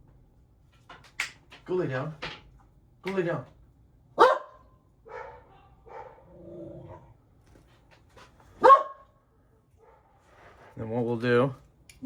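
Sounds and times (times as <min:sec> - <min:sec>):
dog barking: 0:04.2 - 0:07.1, 0:08.6 - 0:09.2, 0:09.8 - 0:10.2.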